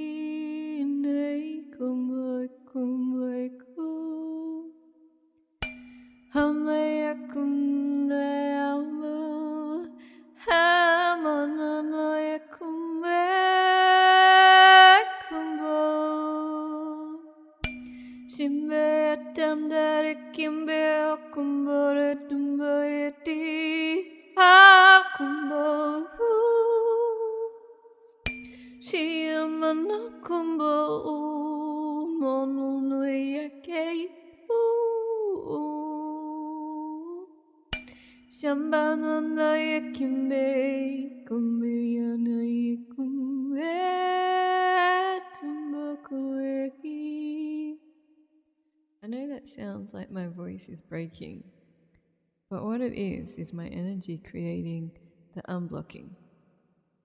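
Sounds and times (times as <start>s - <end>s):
woman singing wordless chant: 0.0s - 4.8s, 6.4s - 17.4s, 18.2s - 27.7s, 28.7s - 37.3s, 38.3s - 47.8s
tuning fork ringing: 5.6s - 6.4s, 17.6s - 18.4s, 28.2s - 28.9s.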